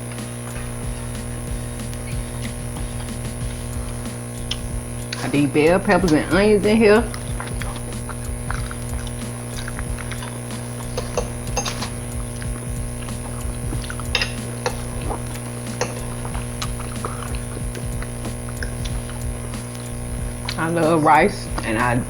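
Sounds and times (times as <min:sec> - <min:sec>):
steady low hum: 0:00.0 - 0:22.0
cutlery clinking on plates: 0:09.6 - 0:12.0, 0:13.8 - 0:15.0, 0:15.6 - 0:16.2.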